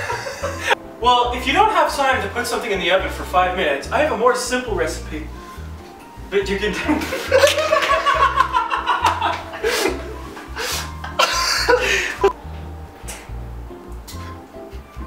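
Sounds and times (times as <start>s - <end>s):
person laughing: 0.0s - 0.8s, 6.8s - 12.4s
music with bass line: 0.0s - 15.0s.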